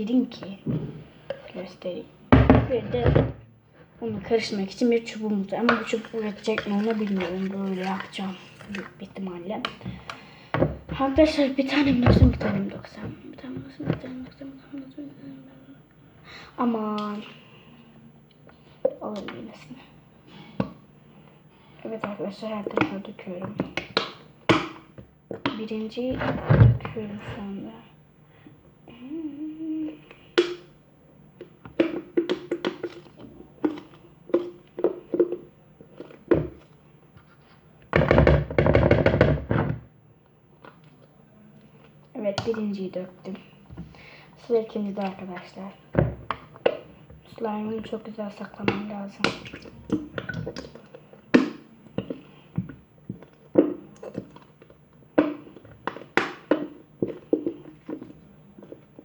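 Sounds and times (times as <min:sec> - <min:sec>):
plastic bottle and bowl knocking: 0:00.3 - 0:01.6, 0:02.3 - 0:03.5, 0:04.2 - 0:14.4, 0:22.0 - 0:27.5, 0:30.4 - 0:30.7, 0:31.4 - 0:39.9, 0:42.3 - 0:42.8, 0:44.6 - 0:59.0
plastic bottle knocking on bowl: 0:02.3 - 0:03.5, 0:31.6 - 0:36.7, 0:37.9 - 0:39.9, 0:45.3 - 0:54.4.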